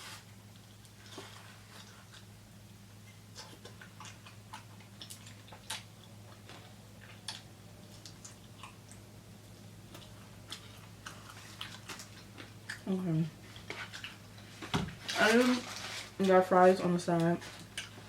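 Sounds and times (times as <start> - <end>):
steady low hum: 0.0 - 18.0
chewing clicks and smacks: 3.3 - 9.0, 9.9 - 12.9.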